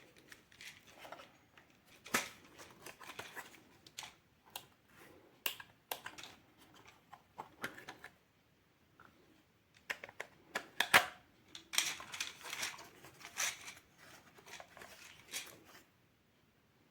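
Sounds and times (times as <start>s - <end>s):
packaging rustling: 0.0s - 4.2s, 11.6s - 15.8s.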